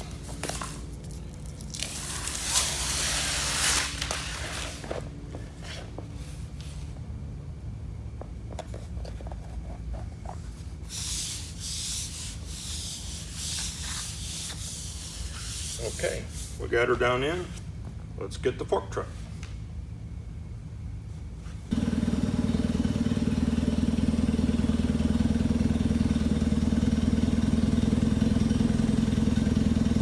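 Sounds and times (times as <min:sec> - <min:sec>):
steady low hum: 0:00.0 - 0:30.0
release paper tearing: 0:01.7 - 0:04.8.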